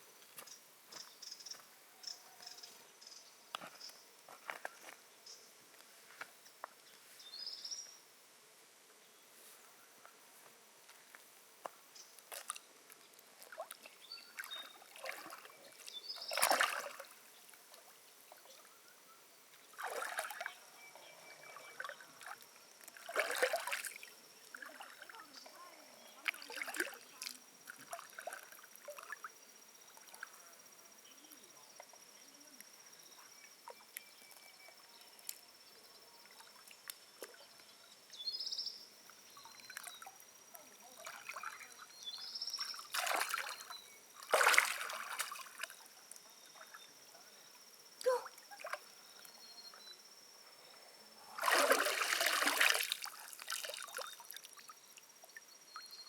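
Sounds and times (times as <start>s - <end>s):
water splashing and trickling: 12.2s - 18.7s, 19.7s - 20.8s, 21.5s - 29.3s, 39.3s - 47.0s, 48.0s - 49.2s, 51.3s - 55.5s.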